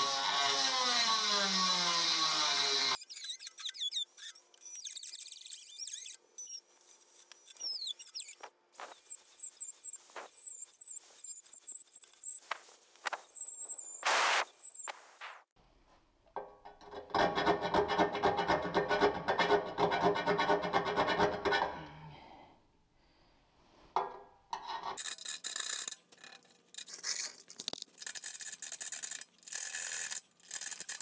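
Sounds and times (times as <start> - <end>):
rotary tool grinding: 0.0 - 14.0, 25.0 - 31.0.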